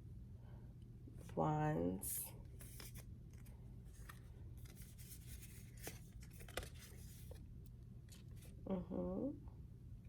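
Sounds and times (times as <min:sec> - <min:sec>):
low steady hum: 0:00.0 - 0:10.0
cards rustling and clicking: 0:02.5 - 0:07.5.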